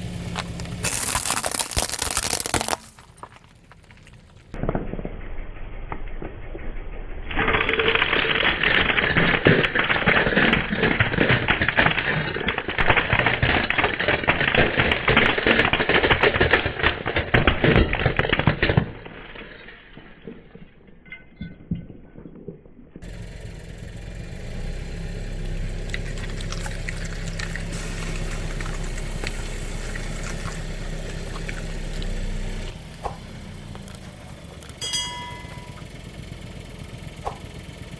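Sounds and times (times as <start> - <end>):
decorations crunching under tyres: 0.0 - 4.7, 23.0 - 36.0.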